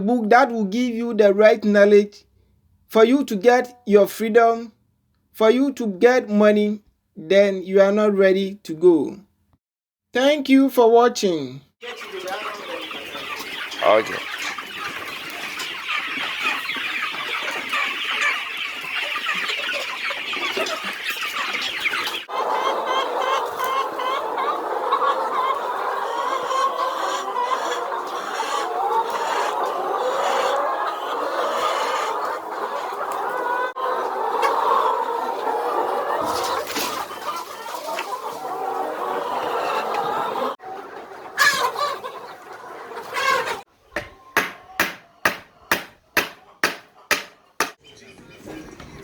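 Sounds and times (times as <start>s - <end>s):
chickens clucking: 11.8s - 49.0s.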